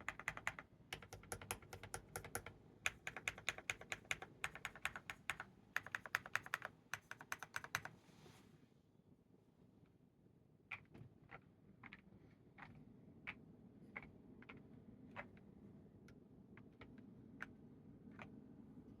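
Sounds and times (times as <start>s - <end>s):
mechanical keyboard keystrokes: 0.0s - 8.0s.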